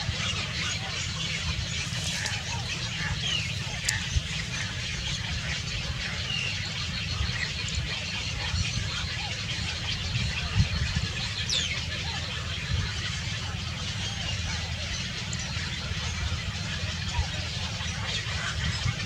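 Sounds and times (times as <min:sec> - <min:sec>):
steady low rumble: 0:00.0 - 0:19.0
bird chirps: 0:00.6 - 0:05.7.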